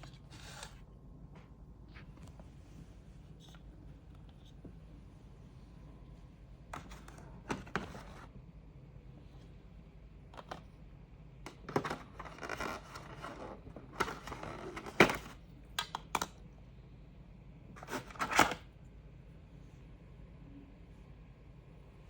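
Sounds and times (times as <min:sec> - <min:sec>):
packaging rustling and scraping: 0:11.6 - 0:15.4.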